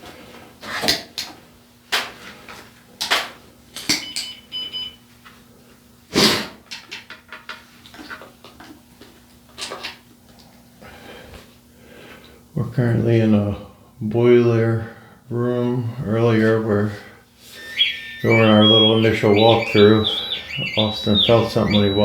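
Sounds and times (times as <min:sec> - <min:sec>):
faint steady hum: 0:17.6 - 0:22.0
short high electronic beep: 0:17.6 - 0:22.0.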